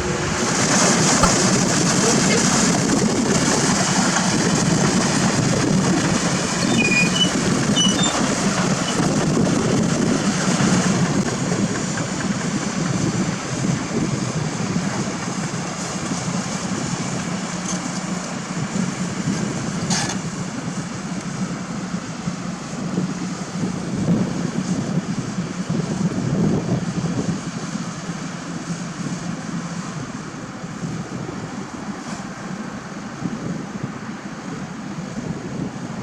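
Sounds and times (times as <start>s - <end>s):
short knock: 1.2s - 1.7s.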